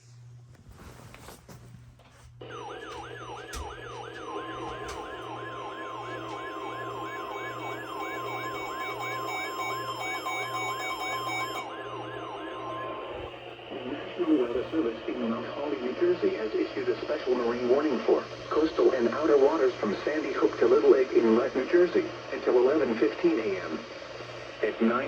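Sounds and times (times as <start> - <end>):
rapid sweeping siren alarm: 2.4 - 15.6
steady warning tone: 2.4 - 23.8.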